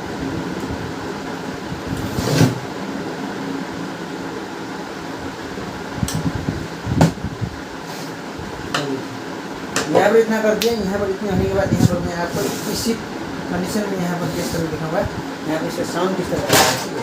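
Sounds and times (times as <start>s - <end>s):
fan-like hum: 0.0s - 17.0s.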